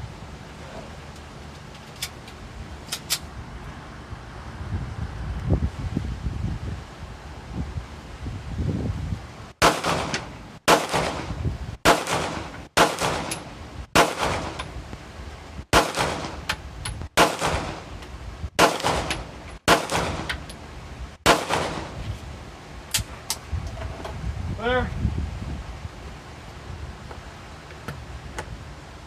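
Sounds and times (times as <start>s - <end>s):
single gunshots with echo: 9.6s - 11.3s, 15.8s - 16.4s, 17.2s - 17.8s, 19.7s - 20.3s, 21.3s - 22.0s.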